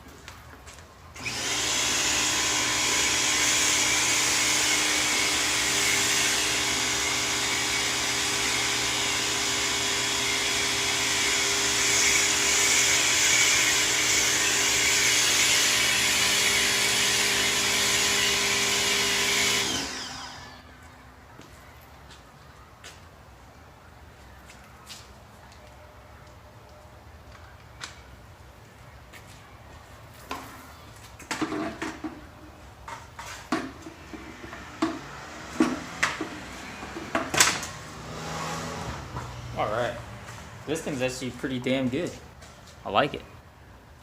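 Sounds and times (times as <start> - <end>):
pressure washer motor running: 1.2 - 20.6.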